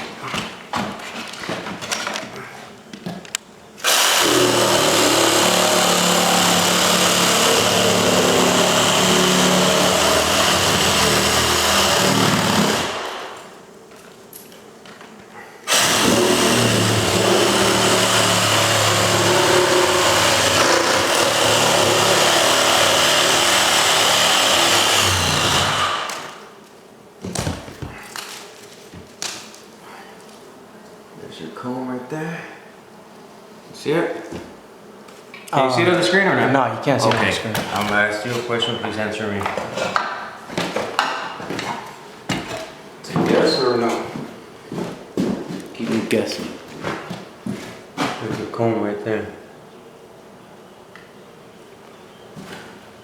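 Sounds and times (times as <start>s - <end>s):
power saw cutting into wall: 3.8s - 13.5s, 15.7s - 26.5s.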